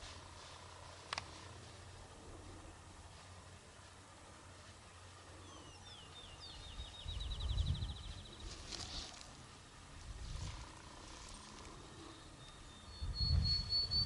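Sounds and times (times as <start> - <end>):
low rumbling noise: 0.0 - 14.0
songbird whistles and trill: 12.1 - 14.0.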